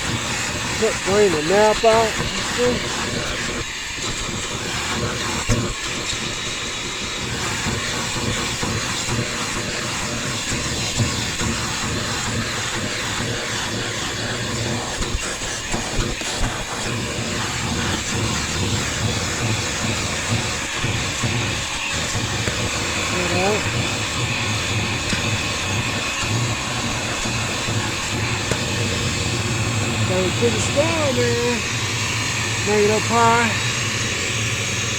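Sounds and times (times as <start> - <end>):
vacuum cleaner on carpet: 0.0 - 34.9.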